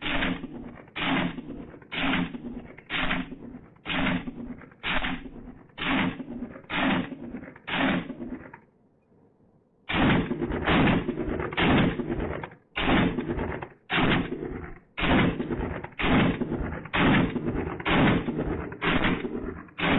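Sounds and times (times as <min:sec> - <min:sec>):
pistol gunshots: 0:00.0 - 0:08.5, 0:09.9 - 0:19.9.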